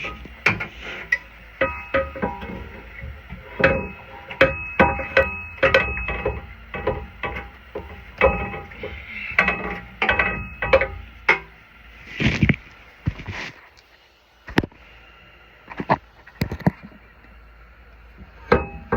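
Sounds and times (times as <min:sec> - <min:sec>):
metal strikes on exhaust pipe: 0:00.0 - 0:12.1, 0:18.5 - 0:18.9.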